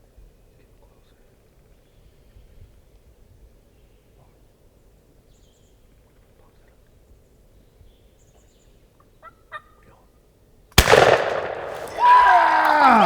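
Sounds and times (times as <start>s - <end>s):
shotgun shot: 10.8s - 12.0s.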